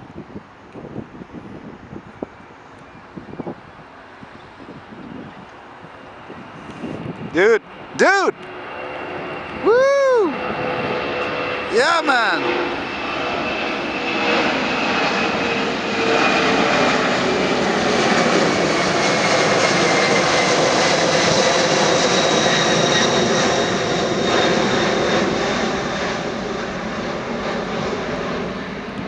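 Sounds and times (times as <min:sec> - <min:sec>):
jet airliner taking off: 0:00.0 - 0:29.0.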